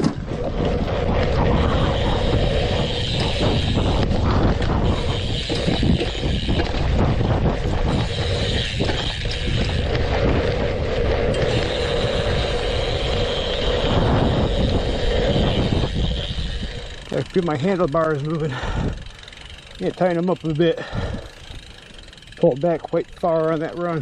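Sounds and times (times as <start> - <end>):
wind rushing: 0.0 - 17.2.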